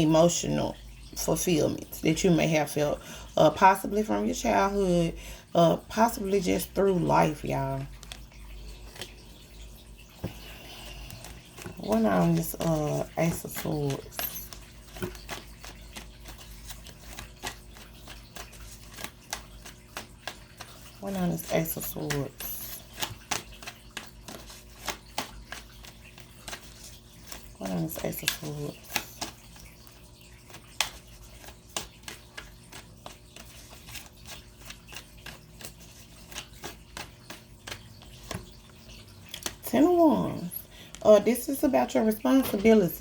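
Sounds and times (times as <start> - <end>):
cards being shuffled: 10.2 - 39.7.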